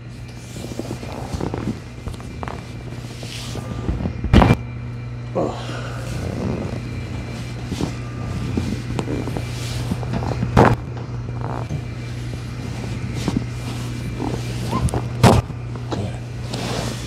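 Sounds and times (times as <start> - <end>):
steady low hum: 0.0 - 17.0
sharp thump of back adjustment: 3.9 - 4.6, 14.2 - 15.5.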